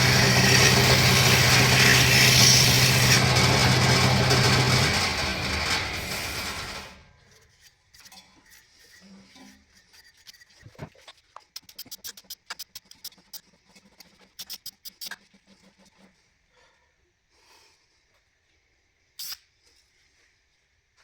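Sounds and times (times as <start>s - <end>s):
scraping: 0.0s - 7.4s.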